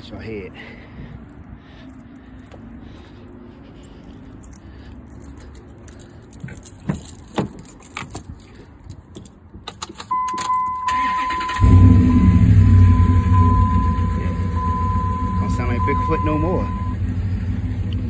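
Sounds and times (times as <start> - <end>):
keys jangling: 3.8 - 10.6
engine cranking and starting: 9.7 - 14.0
dashboard warning chime: 10.1 - 17.0.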